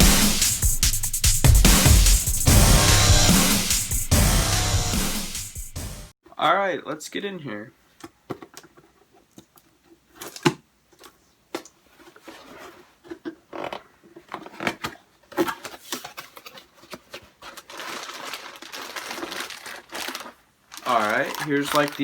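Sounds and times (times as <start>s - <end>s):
packaging rustling: 10.1s - 22.0s.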